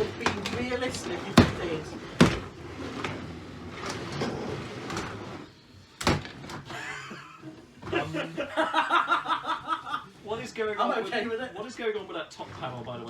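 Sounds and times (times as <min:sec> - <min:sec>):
voices: 0:00.0 - 0:02.5.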